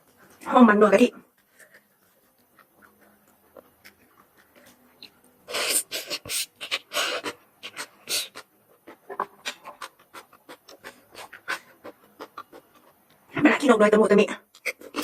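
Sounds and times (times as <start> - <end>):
chewing and mouth clicks: 1.5 - 5.4, 6.1 - 13.3.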